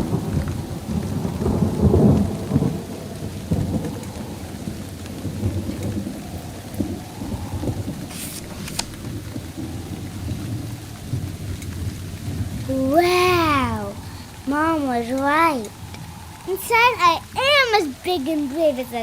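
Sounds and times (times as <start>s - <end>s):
steady rain: 0.0s - 19.0s
thunder rumbling: 0.0s - 19.0s
brief crackle: 8.0s - 9.2s.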